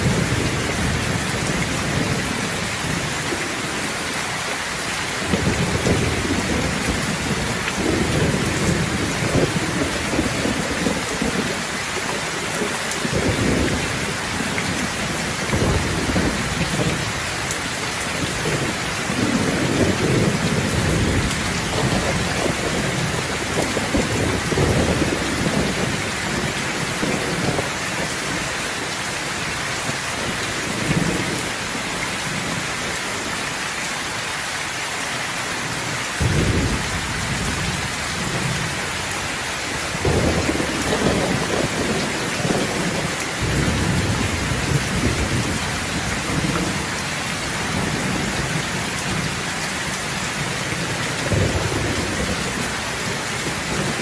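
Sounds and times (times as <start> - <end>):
thunder rumbling: 0.0 - 29.1, 29.8 - 32.9, 36.2 - 54.0
steady rain: 0.0 - 54.0
thunder clap: 5.2 - 11.6, 18.2 - 27.7, 36.2 - 39.2, 39.8 - 46.9, 51.2 - 54.0.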